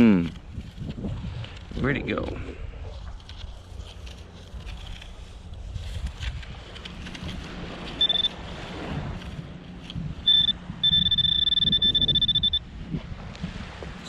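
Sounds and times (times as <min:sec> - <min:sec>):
metal detector beeping: 0:08.0 - 0:08.4, 0:10.2 - 0:12.6.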